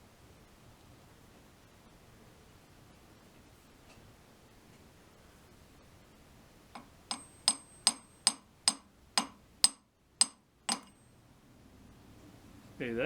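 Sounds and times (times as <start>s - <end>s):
small hammer tapping metal: 6.8s - 11.0s.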